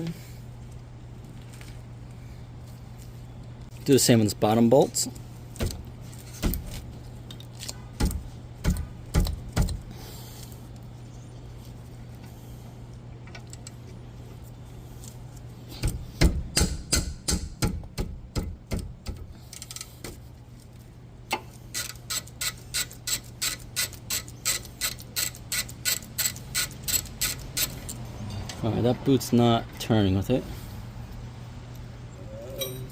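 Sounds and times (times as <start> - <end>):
steady low hum: 0.0 - 32.9
socket ratchet clicking: 21.7 - 28.0.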